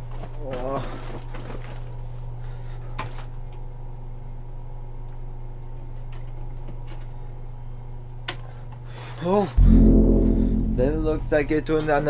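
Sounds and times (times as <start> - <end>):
steady low hum: 9.6 - 12.0.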